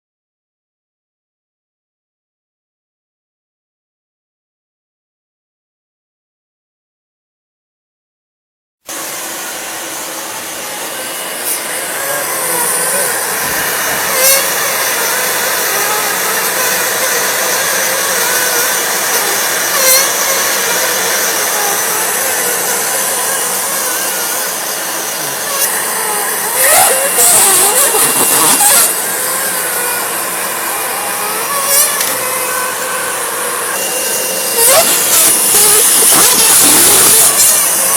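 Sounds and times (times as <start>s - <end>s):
bag sealing machine running: 8.9s - 37.9s.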